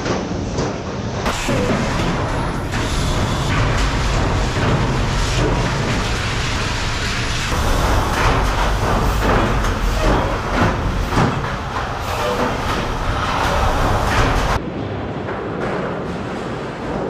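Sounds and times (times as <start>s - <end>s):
metallic clanks and clatter: 1.2s - 14.6s
machinery low rumble: 1.2s - 17.0s.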